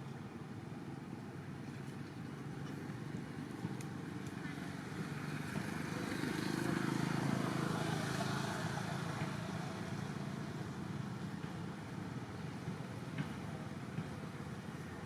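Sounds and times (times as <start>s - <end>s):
vehicle engine passing: 4.5s - 10.4s.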